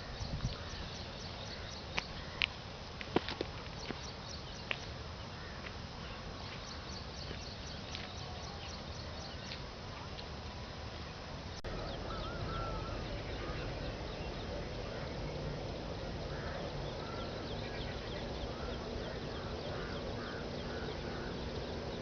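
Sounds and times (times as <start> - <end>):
background hiss: 0.0 - 22.0
birds chirping: 0.0 - 22.0
wavering bird call: 11.7 - 15.1.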